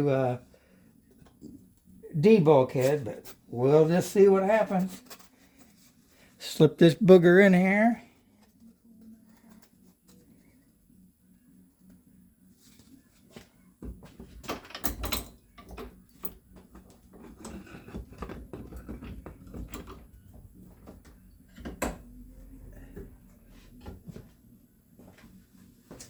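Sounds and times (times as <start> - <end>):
metal knocking and clatter: 14.1 - 20.2.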